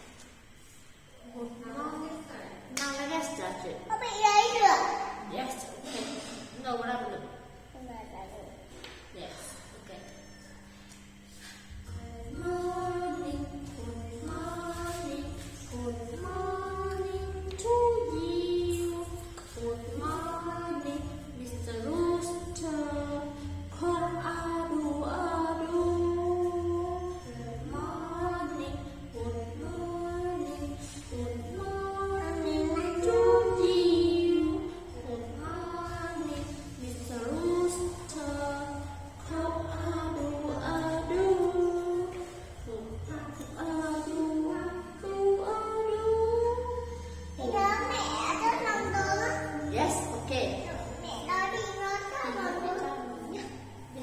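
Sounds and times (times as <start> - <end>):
children singing: 21.8 - 50.1.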